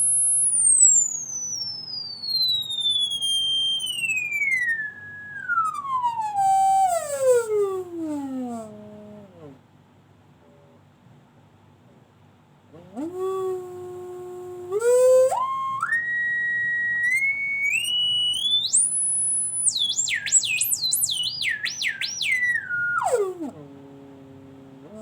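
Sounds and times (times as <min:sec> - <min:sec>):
whistle-like tone rising and warbling: 0:00.0 - 0:07.6, 0:14.8 - 0:23.6.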